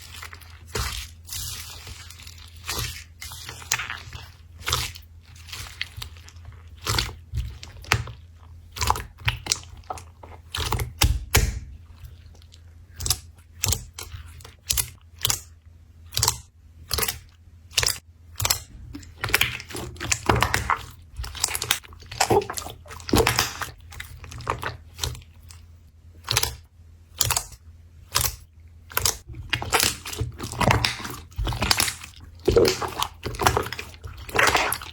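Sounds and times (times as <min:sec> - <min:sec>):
slime clicking and crackling: 0:00.0 - 0:34.9.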